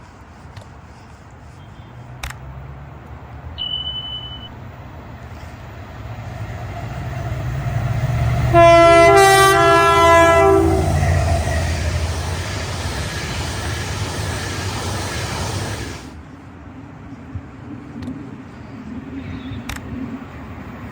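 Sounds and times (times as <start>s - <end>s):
train rumbling: 0.0s - 20.9s
train horn: 8.4s - 12.2s.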